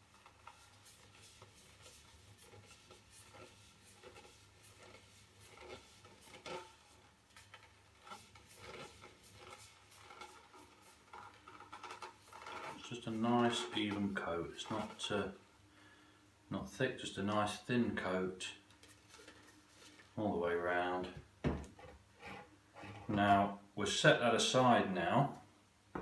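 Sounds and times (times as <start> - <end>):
faint rubbing: 0.1 - 15.5, 18.8 - 23.5.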